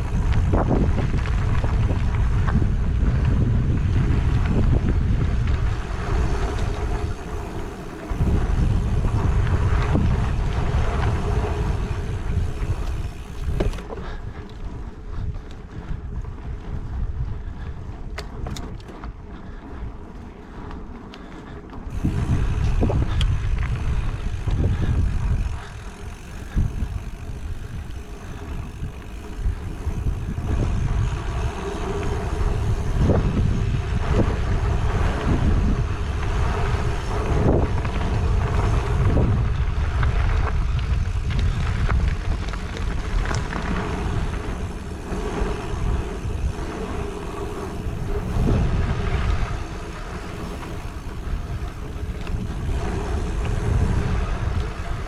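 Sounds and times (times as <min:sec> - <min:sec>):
bike knocks and rattles: 0:00.0 - 0:14.4, 0:18.0 - 0:19.2
bike tyres rumbling: 0:00.0 - 0:55.0
wind rushing over microphone: 0:00.0 - 0:55.0.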